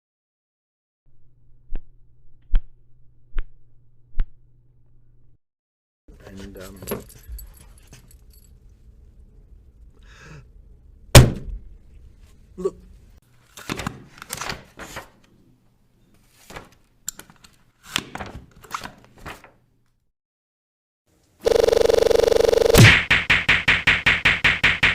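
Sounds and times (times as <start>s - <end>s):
punch hits and thuds: 11.2s - 11.6s, 22.8s - 24.9s.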